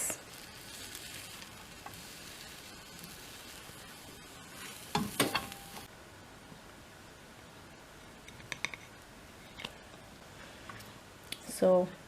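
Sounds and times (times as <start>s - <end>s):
omelette sizzling in frying pan: 0.0s - 5.9s.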